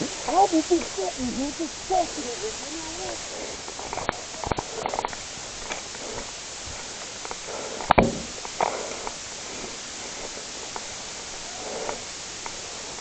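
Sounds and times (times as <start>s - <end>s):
steady background hiss: 0.0s - 13.0s
sharp crack: 7.0s - 9.2s
soft knock: 8.0s - 8.3s.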